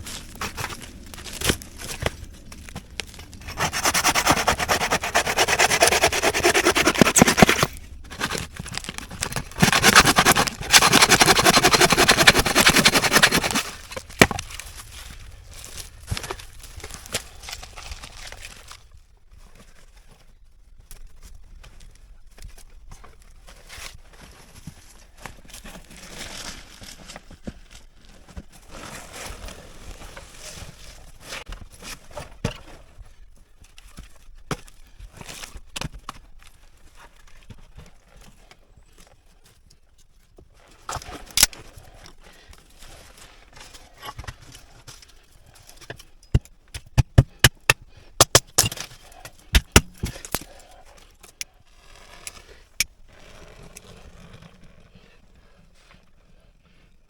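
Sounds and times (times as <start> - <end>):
knocks clicks and scraping: 3.4 - 13.7.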